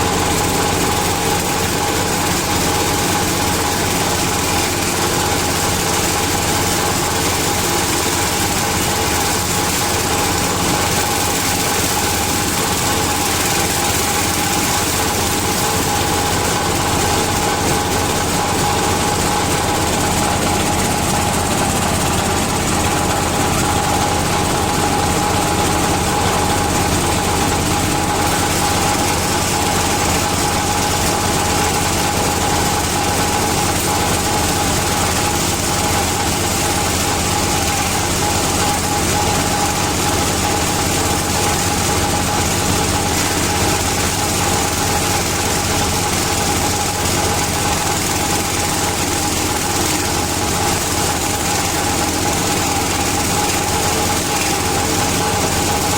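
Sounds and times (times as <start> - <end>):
diesel engine drone: 0.0 - 55.9
high hum of spinning rotor: 0.0 - 55.9.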